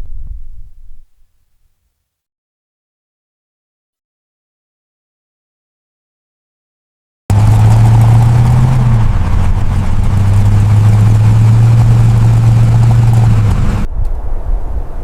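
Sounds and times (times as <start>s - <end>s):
car engine humming: 7.3s - 13.9s.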